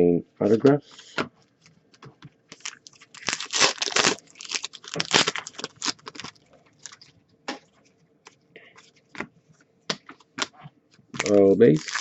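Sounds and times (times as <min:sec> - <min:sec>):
foil wrapper crinkling and tearing: 0:02.5 - 0:07.1, 0:11.1 - 0:12.0.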